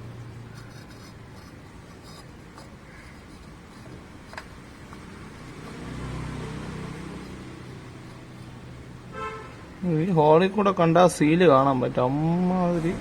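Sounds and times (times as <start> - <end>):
vehicle engine passing: 4.6 - 9.9, 11.9 - 13.0.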